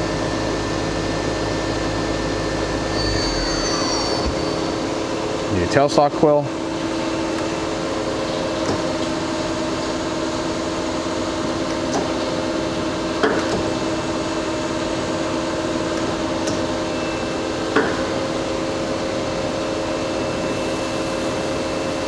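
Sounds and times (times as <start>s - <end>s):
machine hum of fixed tones: 1.9s - 6.4s.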